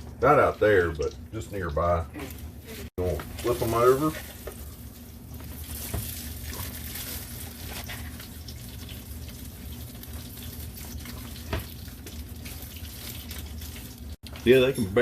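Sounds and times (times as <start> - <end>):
fish sizzling in hot oil: 3.4 - 14.2.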